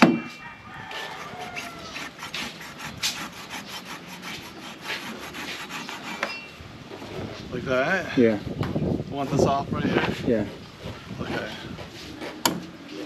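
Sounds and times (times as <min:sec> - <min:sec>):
machete scraping coconut husk: 0:00.7 - 0:06.5.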